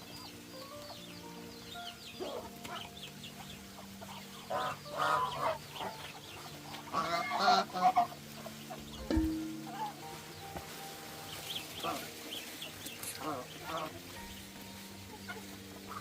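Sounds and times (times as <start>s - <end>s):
geese honking: 0.8s - 16.0s
low thump: 9.0s - 9.8s.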